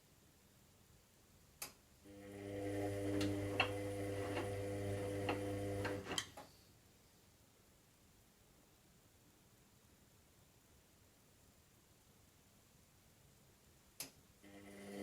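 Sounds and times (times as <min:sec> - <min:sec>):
washing machine motor humming: 0:02.1 - 0:06.2, 0:14.5 - 0:15.0
washing machine clicks: 0:03.2 - 0:06.3.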